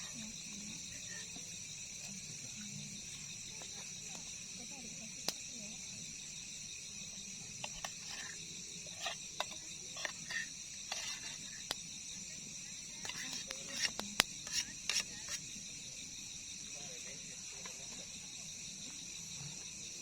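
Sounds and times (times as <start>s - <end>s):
crickets chirring: 0.0s - 20.0s
small clicks and scrapes of handling: 7.6s - 11.8s, 13.0s - 15.4s.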